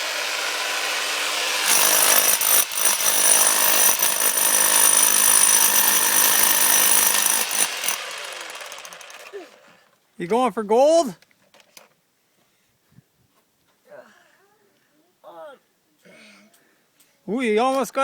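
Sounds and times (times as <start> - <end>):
jackhammer on concrete: 0.0 - 9.8.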